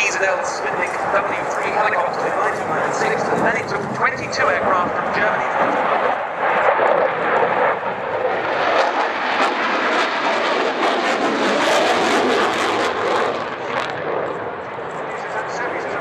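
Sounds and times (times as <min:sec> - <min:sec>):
jet engine roar: 0:00.0 - 0:16.0.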